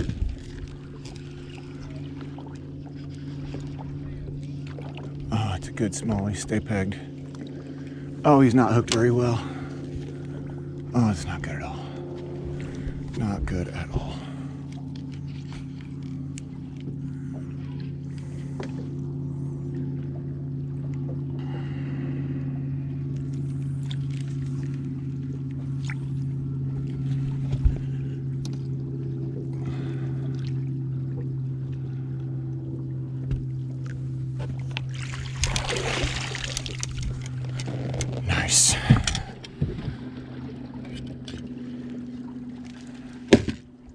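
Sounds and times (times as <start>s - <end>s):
boat motor humming: 0.0s - 43.9s
water splashing: 23.1s - 43.8s.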